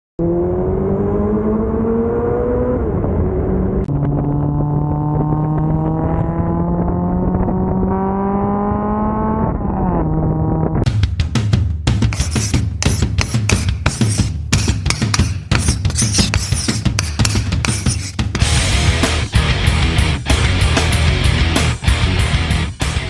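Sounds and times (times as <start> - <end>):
engine accelerating through gears: 0.2 - 10.8.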